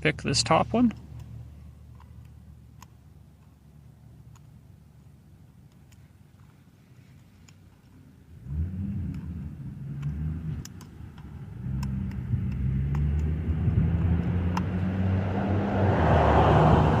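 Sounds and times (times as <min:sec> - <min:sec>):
vehicle engine rumbling: 0:00.0 - 0:17.0.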